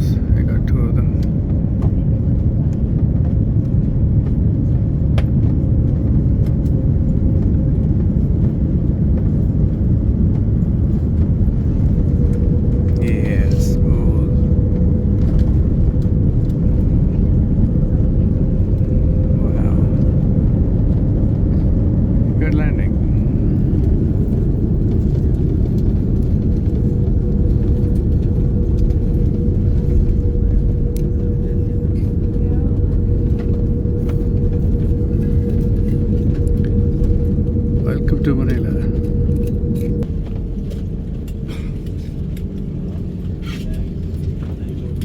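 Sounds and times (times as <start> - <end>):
low rumble of engines and airflow: 0.0 - 45.0
faint steady hum: 9.4 - 45.0.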